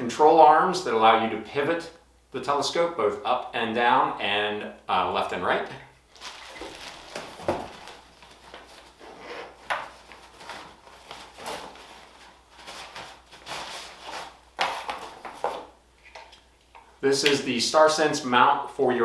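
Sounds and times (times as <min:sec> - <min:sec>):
packaging rustling: 0:06.1 - 0:16.4.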